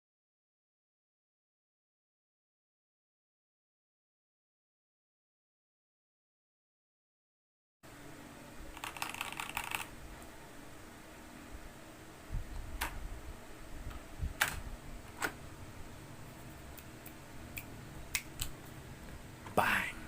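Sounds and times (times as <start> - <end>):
mechanical keyboard typing: 8.7 - 9.9.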